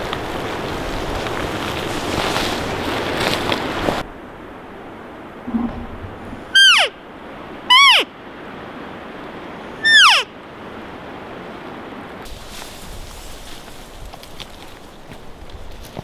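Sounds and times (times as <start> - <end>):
elk mews: 5.4 - 7.0, 7.7 - 8.1.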